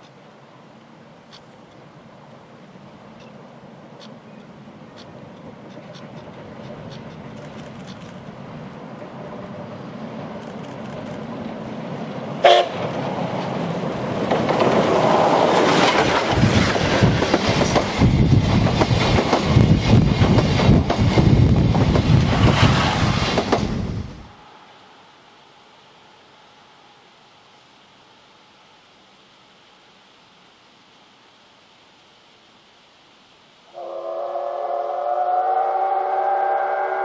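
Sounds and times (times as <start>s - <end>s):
steam whistle blast: 12.4s - 12.8s, 33.7s - 37.0s
steam locomotive chuffing: 12.4s - 24.3s.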